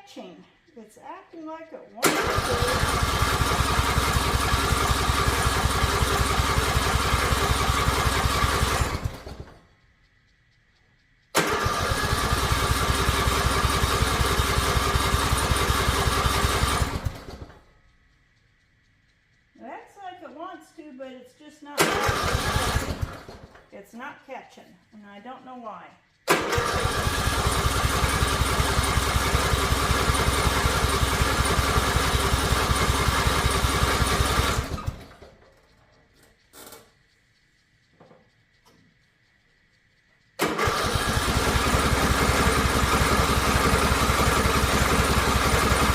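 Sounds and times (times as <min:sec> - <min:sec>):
engine cranking with electric starter: 0:02.0 - 0:09.7, 0:11.3 - 0:17.7, 0:21.8 - 0:23.7, 0:26.2 - 0:35.7, 0:40.4 - 0:45.9.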